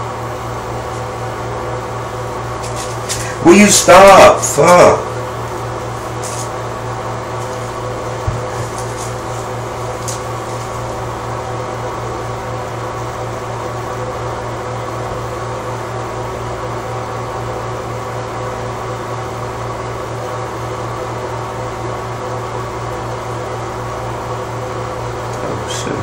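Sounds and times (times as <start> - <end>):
mechanical hum with hiss: 0.0 - 26.0.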